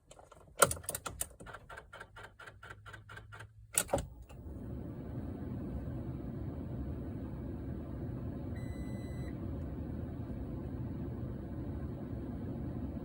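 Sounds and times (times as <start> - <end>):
steady low whir: 4.4 - 13.0.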